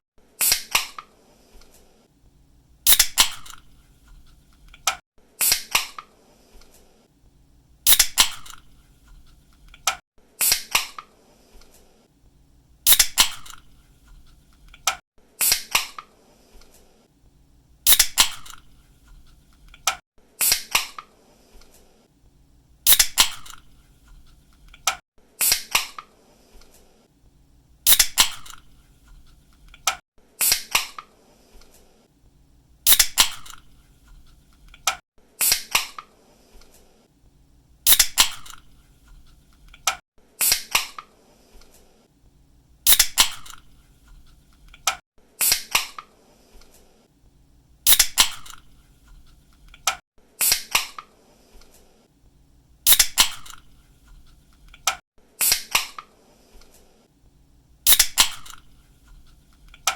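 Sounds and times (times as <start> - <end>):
drink can opening click and hiss: 2.9 - 3.7, 7.9 - 8.7, 12.9 - 13.7, 17.9 - 18.7, 22.9 - 23.7, 27.9 - 28.7, 32.9 - 33.7, 37.9 - 38.7, 42.9 - 43.7, 47.9 - 48.7, 52.9 - 53.7, 57.9 - 58.7.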